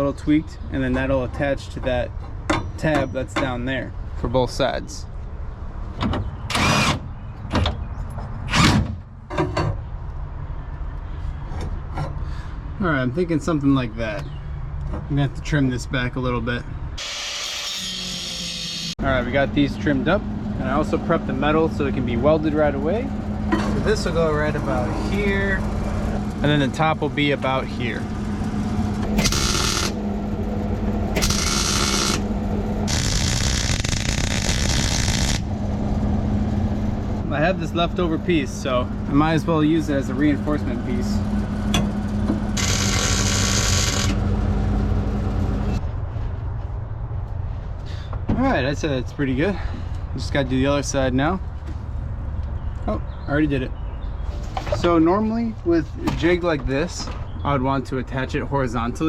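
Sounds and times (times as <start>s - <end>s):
steady low hum: 18.9s - 52.8s
welding arc crackling: 31.2s - 32.3s, 32.9s - 35.5s, 42.6s - 44.2s.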